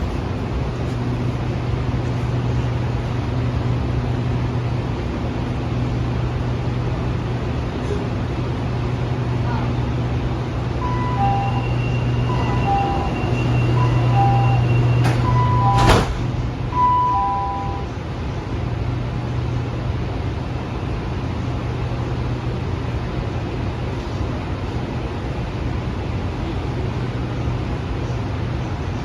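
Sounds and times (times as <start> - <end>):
train car hum: 0.0 - 29.0
two-tone warning beep: 10.8 - 16.1, 16.7 - 17.9
train doors thudding shut: 10.8 - 16.7.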